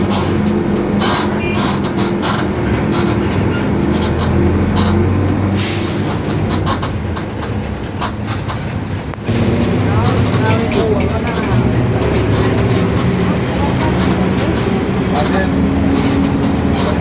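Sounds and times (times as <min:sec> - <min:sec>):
body clicks and rattles: 0:00.0 - 0:17.0
bus engine drone: 0:00.0 - 0:17.0.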